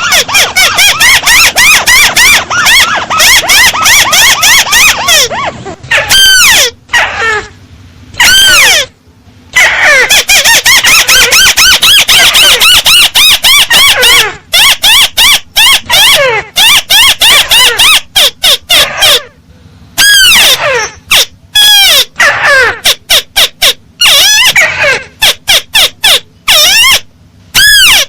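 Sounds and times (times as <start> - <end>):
crake calling squealing notes: 0.0 - 7.5, 8.2 - 19.3, 20.0 - 28.0.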